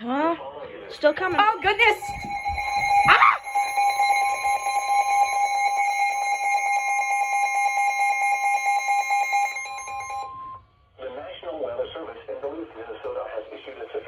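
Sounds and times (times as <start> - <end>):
two-tone alarm: 1.0 - 10.7.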